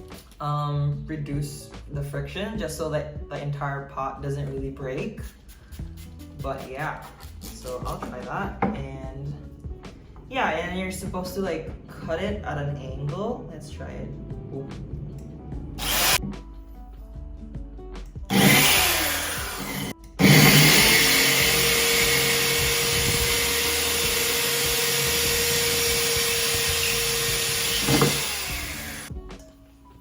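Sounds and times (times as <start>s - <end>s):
drill grinding into ceramic: 15.8s - 16.2s, 18.3s - 29.1s.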